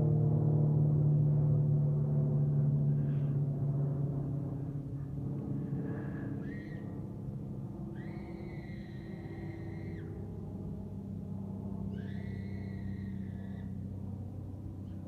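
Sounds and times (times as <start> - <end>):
aircraft engine drone: 0.0 - 15.0
high steady whistling tone: 5.7 - 7.1, 7.8 - 10.3, 11.8 - 13.9.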